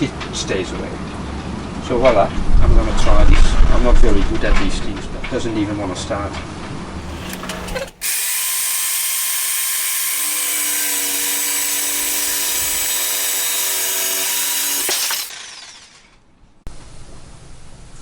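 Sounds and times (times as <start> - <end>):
electric saw cutting wood: 7.0 - 15.6.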